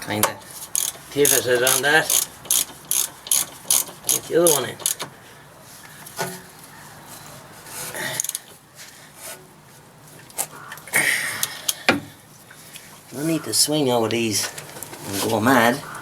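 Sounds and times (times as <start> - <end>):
metallic clicks and scraping: 0.2 - 5.1.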